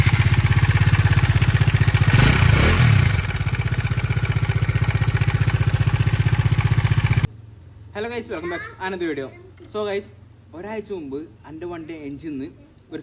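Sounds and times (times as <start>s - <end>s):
motorcycle engine knocking clatter: 0.0s - 7.3s.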